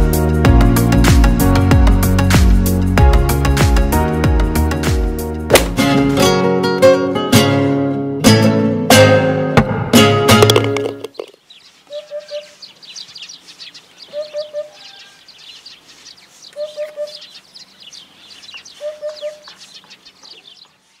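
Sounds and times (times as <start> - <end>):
small birds chirping: 10.8 - 21.0.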